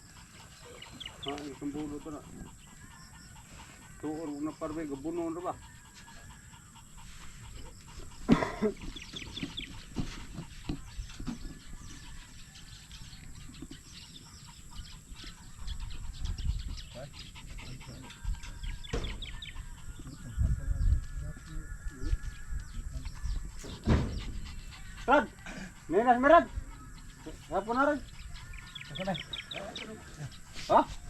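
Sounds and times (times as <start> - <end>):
chickens clucking: 0.0 - 21.0.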